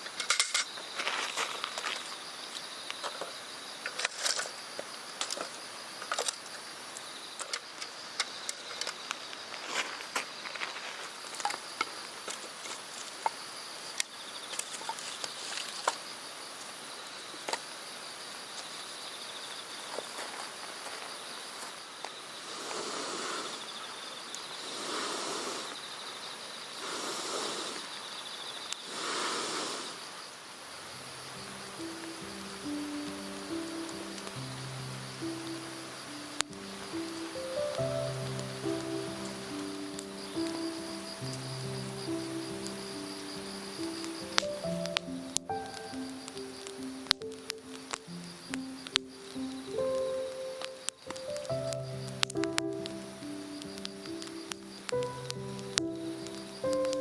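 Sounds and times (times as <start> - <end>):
insects trilling: 0.0 - 57.0
sharp clicks: 43.9 - 53.0, 53.6 - 57.0.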